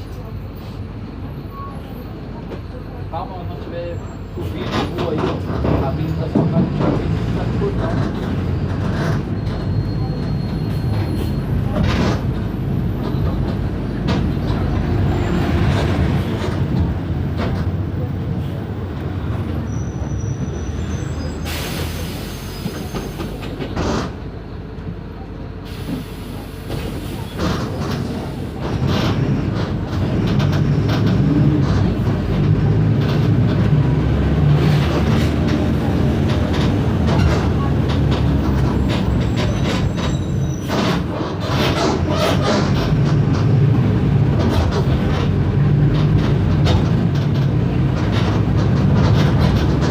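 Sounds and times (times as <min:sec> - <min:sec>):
bus body rattling: 0:00.0 - 0:49.9
bus diesel engine rumble: 0:00.0 - 0:49.9
air hissing: 0:21.4 - 0:23.3.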